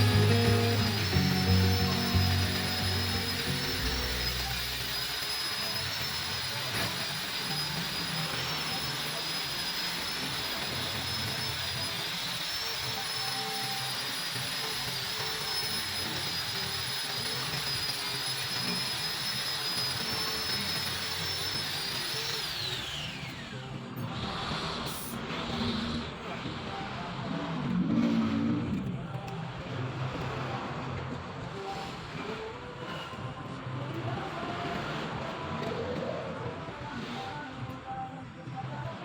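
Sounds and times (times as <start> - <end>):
rotary power tool whining: 0.0 - 29.4.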